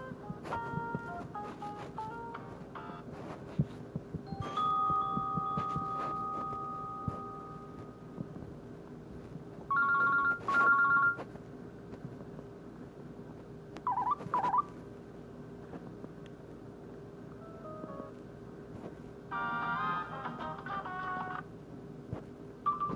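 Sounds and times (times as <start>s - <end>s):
phone held alert tone: 9.7s - 11.2s, 13.9s - 14.7s, 22.7s - 22.9s.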